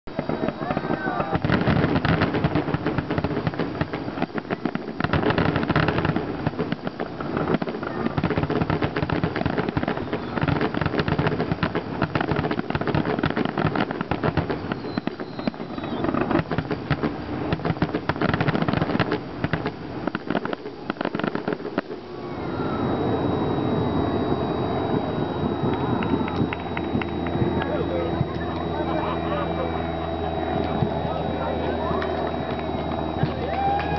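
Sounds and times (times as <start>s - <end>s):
fireworks bursting and crackling: 0.0s - 33.9s
crowd cheering: 0.3s - 1.4s, 22.2s - 33.9s.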